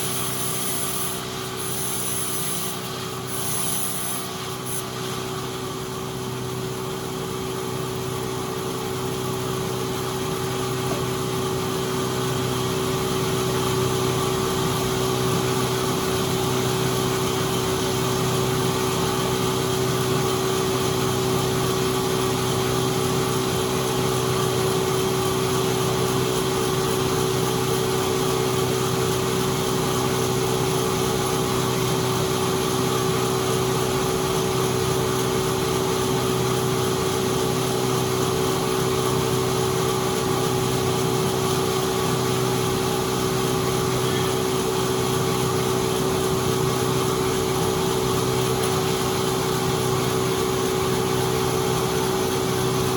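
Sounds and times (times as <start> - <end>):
sawmill machinery motor hum: 0.0 - 19.6.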